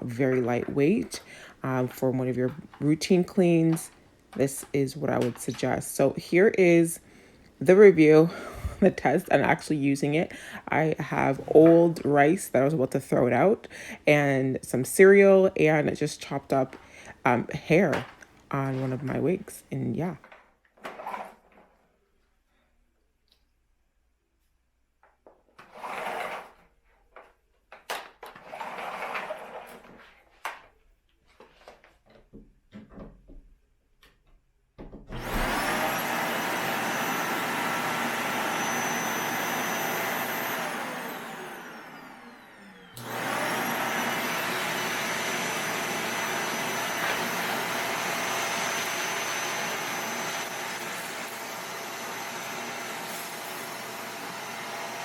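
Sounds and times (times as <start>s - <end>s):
vacuum cleaner motor whine: 35.1s - 55.0s.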